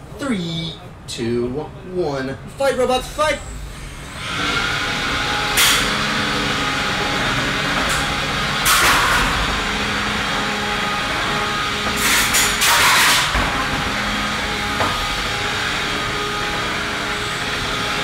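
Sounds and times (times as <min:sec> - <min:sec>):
electric motors whining: 0:03.4 - 0:18.0
harsh grinding bursts: 0:03.8 - 0:18.0.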